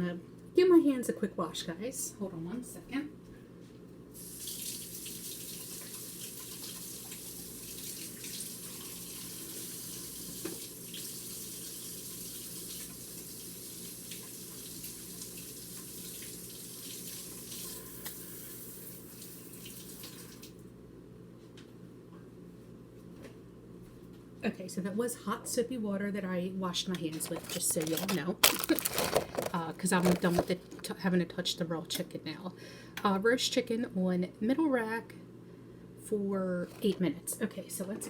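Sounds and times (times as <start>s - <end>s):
tap water running: 4.2s - 20.6s, 27.0s - 30.9s.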